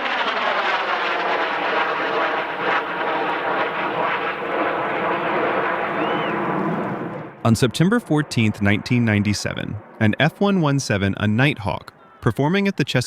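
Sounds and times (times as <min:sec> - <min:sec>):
aircraft engine drone: 0:00.0 - 0:07.4.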